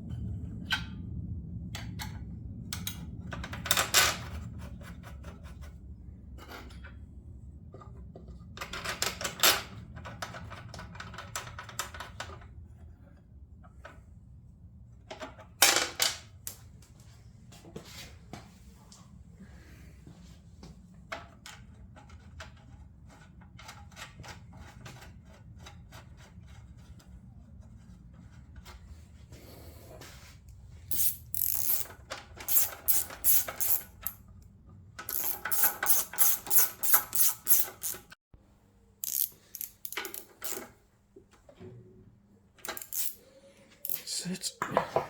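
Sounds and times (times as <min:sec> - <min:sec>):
ratchet spanner clicking: 0:30.9 - 0:31.9, 0:32.5 - 0:34.2, 0:35.1 - 0:38.1, 0:39.0 - 0:40.7, 0:42.6 - 0:43.2.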